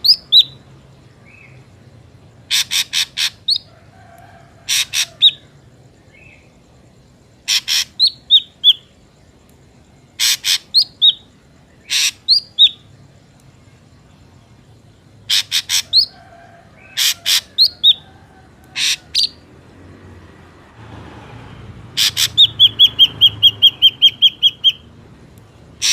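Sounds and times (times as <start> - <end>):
bird harsh rasping notes: 10.2 - 11.2, 11.8 - 12.6, 15.3 - 16.1, 18.8 - 19.4, 21.9 - 24.8.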